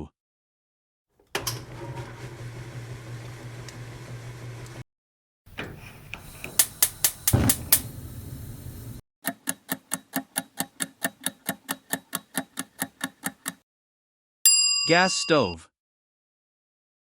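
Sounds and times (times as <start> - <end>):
gas hissing: 5.5 - 9.0
stove igniter clicking: 5.5 - 9.0.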